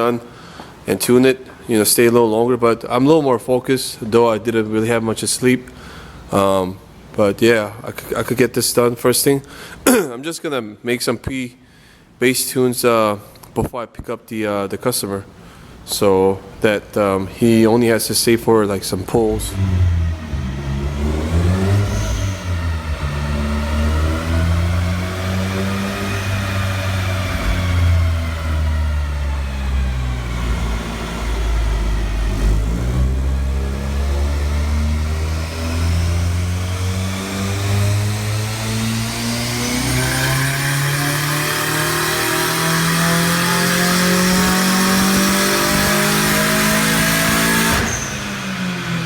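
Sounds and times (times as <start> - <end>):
car engine running: 18.8 - 49.0.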